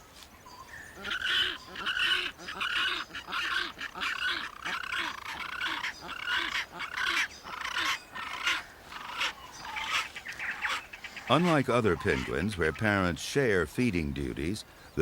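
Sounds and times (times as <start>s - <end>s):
penguins calling harshly: 1.0s - 12.8s.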